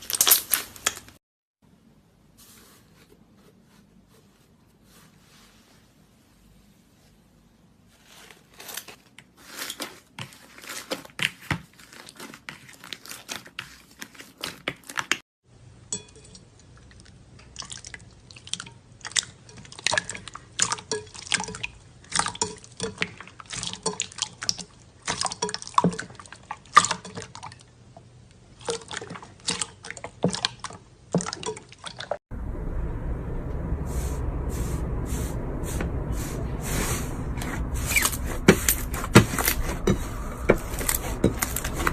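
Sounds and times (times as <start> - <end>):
slime squelching: 34.5 - 41.9.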